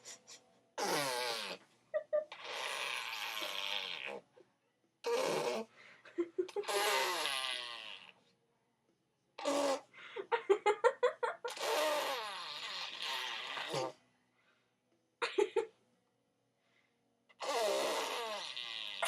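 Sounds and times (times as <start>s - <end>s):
girl blowing raspberries: 0.8s - 1.6s, 2.3s - 4.2s, 5.0s - 5.7s, 6.6s - 8.2s, 9.4s - 9.9s, 11.5s - 14.0s, 17.4s - 19.0s.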